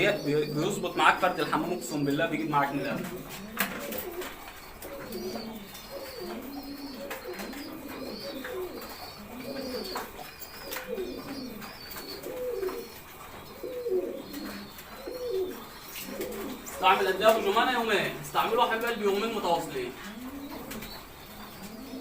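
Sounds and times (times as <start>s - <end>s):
pigeons cooing: 0.0s - 22.0s.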